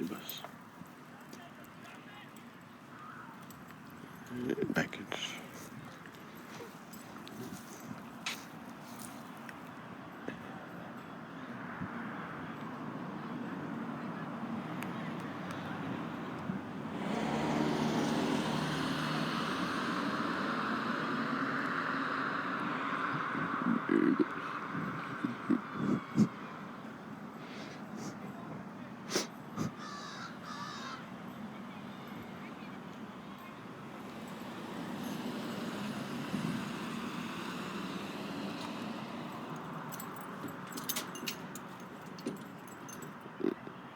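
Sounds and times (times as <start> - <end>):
vehicle passing by: 12.0 - 27.4, 31.1 - 43.1.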